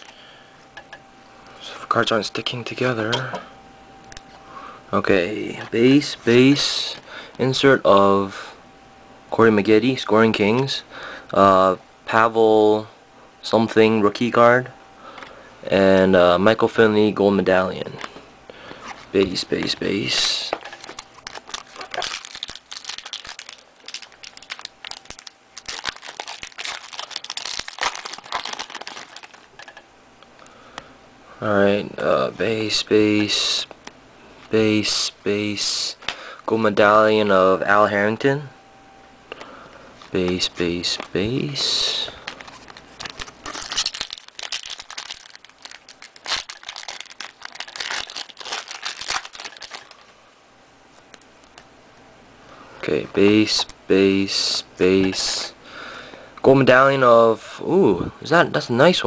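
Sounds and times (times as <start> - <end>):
plastic wrapper crinkling: 19.2 - 29.8, 40.0 - 50.1.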